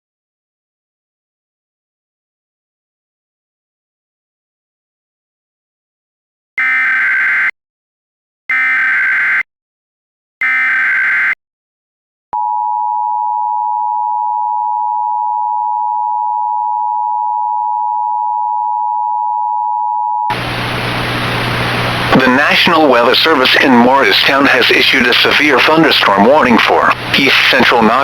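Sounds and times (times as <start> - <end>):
data tone bursts: 6.6 - 7.5, 8.5 - 9.4, 10.4 - 11.4, 22.0 - 28.0
two-tone attention signal: 6.6 - 7.5, 8.5 - 9.4, 10.4 - 11.4.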